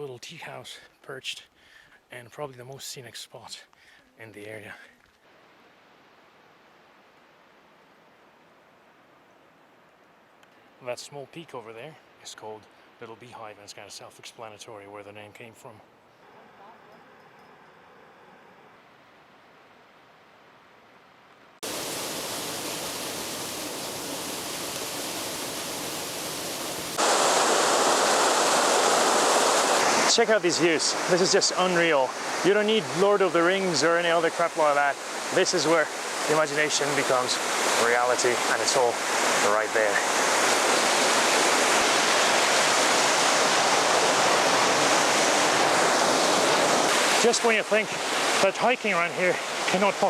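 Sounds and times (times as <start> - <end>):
falling water rushing: 21.6 - 50.0.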